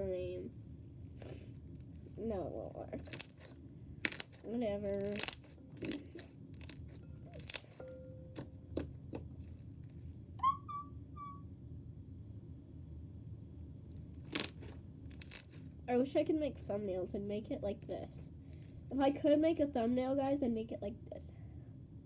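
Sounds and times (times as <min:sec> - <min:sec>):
high squeak: 0:10.4 - 0:11.5
slime sticky clicks and pops: 0:14.3 - 0:15.5.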